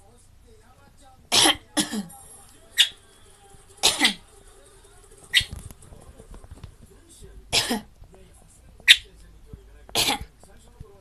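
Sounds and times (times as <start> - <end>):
bird mimicking throat clearing: 3.8 - 4.2.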